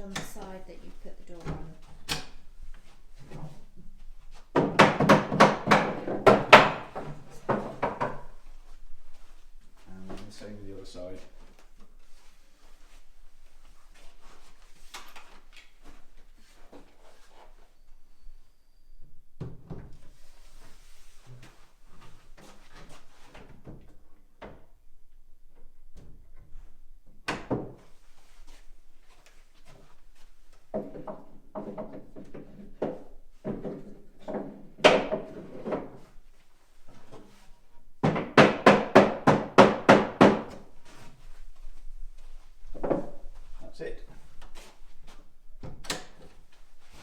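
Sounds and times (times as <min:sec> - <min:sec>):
wooden wedge knocking: 0:04.5 - 0:08.3, 0:30.7 - 0:35.9, 0:38.0 - 0:40.6.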